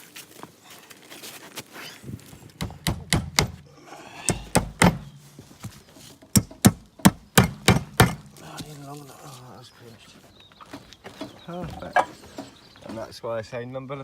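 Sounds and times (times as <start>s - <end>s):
hammer striking nails into wood: 2.6s - 3.7s, 4.3s - 5.2s, 6.2s - 8.4s.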